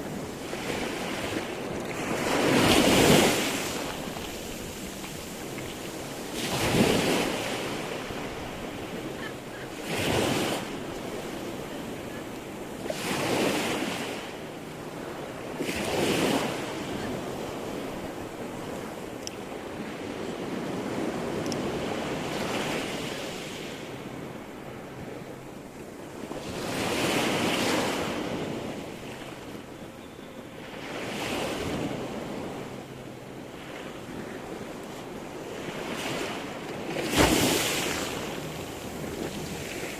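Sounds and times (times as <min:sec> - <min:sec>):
waves breaking and washing in: 0:00.0 - 0:39.9
wind: 0:00.0 - 0:39.9
rush of water: 0:35.8 - 0:39.9.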